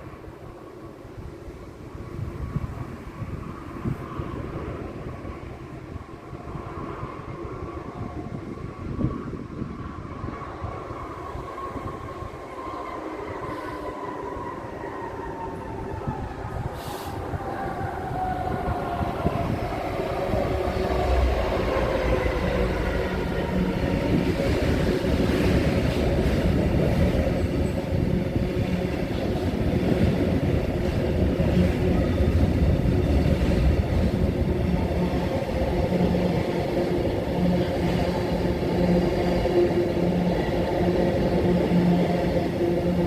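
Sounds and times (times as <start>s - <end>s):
train passing at speed: 0.0s - 43.0s.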